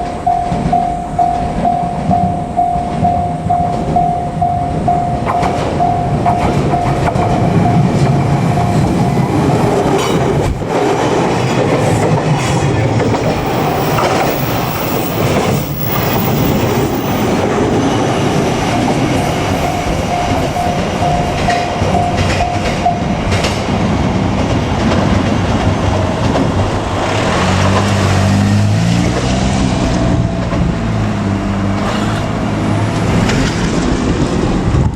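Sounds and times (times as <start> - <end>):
level crossing bell ringing: 0.0 - 9.3, 19.6 - 23.1
train running rumble: 0.0 - 34.9
train wheels clattering over joints: 4.8 - 31.0.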